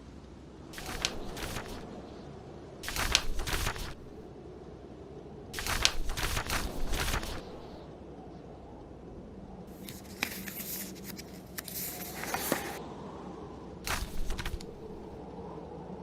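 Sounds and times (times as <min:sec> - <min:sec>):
storm wind: 0:00.0 - 0:10.2, 0:12.8 - 0:16.0
book pages turning: 0:00.8 - 0:02.0, 0:02.8 - 0:04.2, 0:05.6 - 0:07.8, 0:09.7 - 0:12.8, 0:13.9 - 0:15.2.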